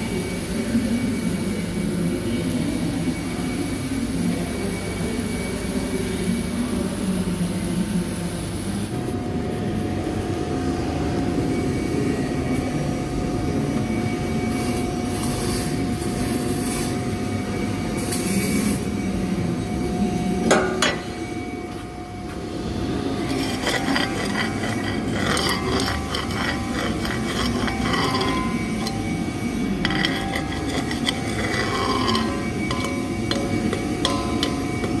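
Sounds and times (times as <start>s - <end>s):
scraping on steel pipe: 23.2s - 35.0s.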